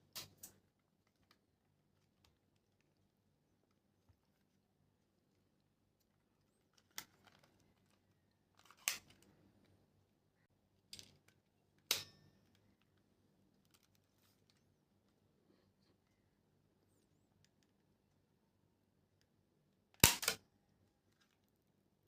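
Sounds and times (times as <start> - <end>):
plastic toy guns clicking: 20.0 - 20.4.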